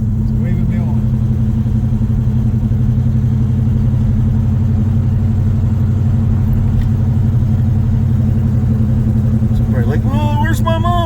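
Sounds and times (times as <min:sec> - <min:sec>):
car engine running steadily: 0:00.0 - 0:11.0.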